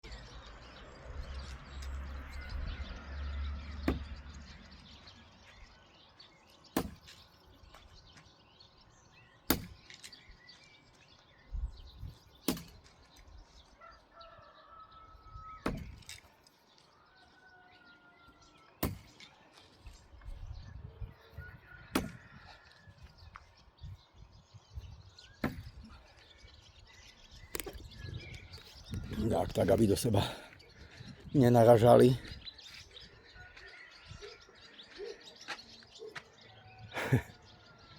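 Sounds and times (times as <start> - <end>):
birds chirping faintly: 0.0 - 37.9
thrown knives hitting target: 12.4 - 12.9, 15.7 - 16.3.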